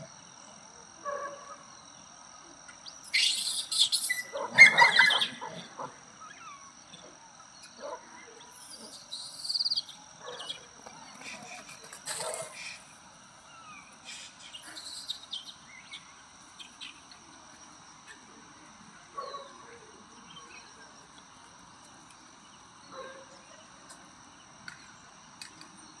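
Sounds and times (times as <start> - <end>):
insects droning: 0.0 - 26.0
short insect chirps: 1.6 - 7.8, 8.4 - 26.0
faint animal calls: 3.0 - 17.0.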